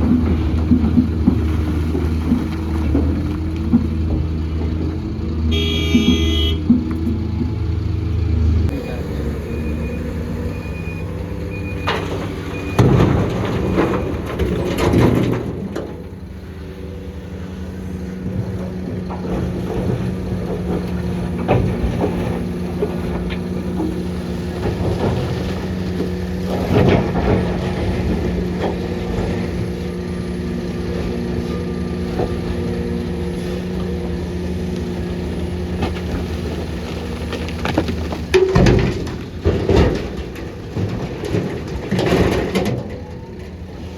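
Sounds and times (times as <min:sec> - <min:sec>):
heavy diesel engine running: 0:00.0 - 0:43.9.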